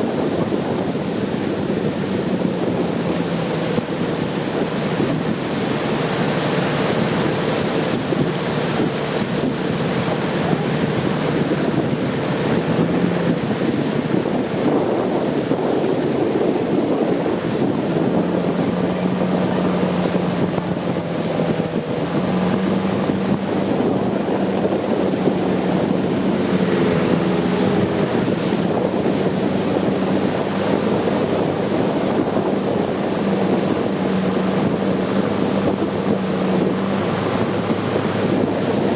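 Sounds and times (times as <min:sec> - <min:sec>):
boat engine running: 0:00.0 - 0:38.9
water rushing past hull: 0:00.0 - 0:38.9
wind buffeting microphone: 0:00.0 - 0:38.9.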